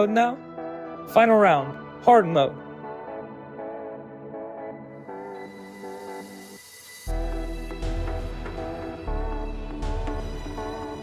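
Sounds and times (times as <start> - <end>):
music with steady beat and deep bass: 5.0 - 11.0.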